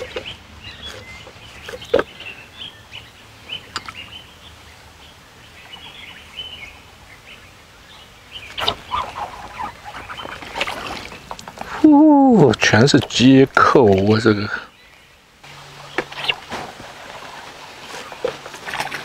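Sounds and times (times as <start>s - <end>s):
small birds chirping: 0.0s - 19.0s
rustling: 8.6s - 11.9s, 15.5s - 19.0s.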